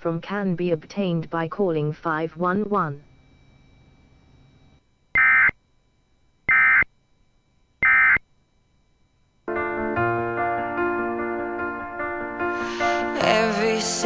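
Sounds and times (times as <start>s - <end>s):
shrill digital data tones: 3.0s - 5.6s, 6.5s - 6.9s, 7.8s - 8.2s
piano music: 9.5s - 14.0s.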